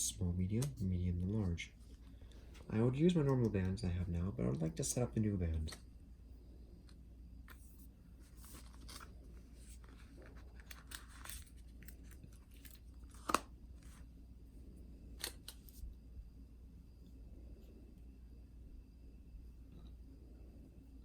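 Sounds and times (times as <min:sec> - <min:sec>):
packaging crinkling and rustling: 0:08.2 - 0:14.0
packaging clicks: 0:08.5 - 0:14.0, 0:15.2 - 0:15.8.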